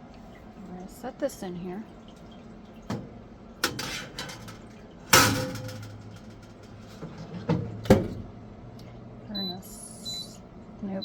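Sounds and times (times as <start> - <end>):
metal pan clanking in oven: 3.6 - 8.2.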